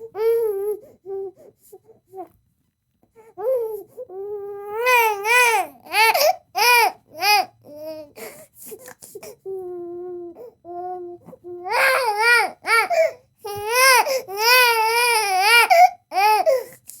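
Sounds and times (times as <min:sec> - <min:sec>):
baby crying: 0:03.4 - 0:08.3, 0:09.5 - 0:16.7.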